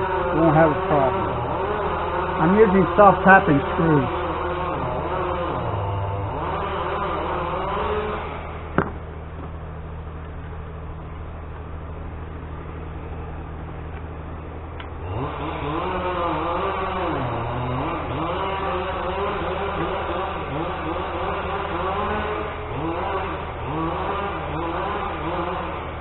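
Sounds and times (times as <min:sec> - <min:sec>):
chainsaws revving: 0:00.0 - 0:09.1, 0:14.8 - 0:26.0
low engine hum: 0:00.0 - 0:26.0.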